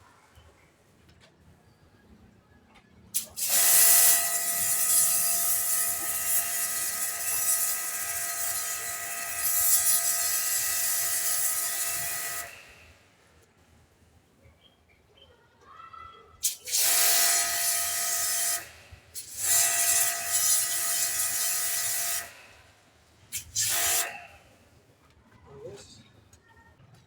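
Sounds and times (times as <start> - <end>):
pressure washer spraying: 3.2 - 12.8, 16.4 - 22.5, 23.3 - 24.3.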